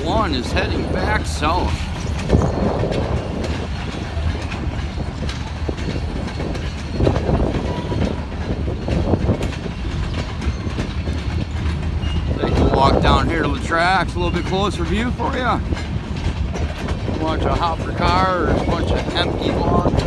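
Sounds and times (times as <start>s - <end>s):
freight train rumbling past: 0.0s - 20.0s
wheels clicking on rails: 0.0s - 20.0s
wind buffeting microphone: 0.0s - 20.0s.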